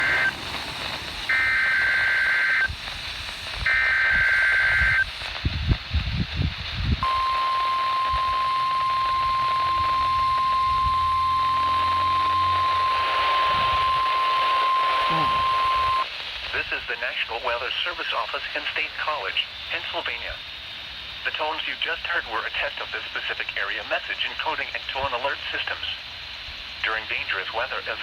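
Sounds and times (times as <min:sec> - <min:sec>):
steady warning alarm tone: 0:00.0 - 0:05.1, 0:07.0 - 0:16.0
harsh warbling data bursts: 0:00.0 - 0:05.4, 0:07.0 - 0:16.0.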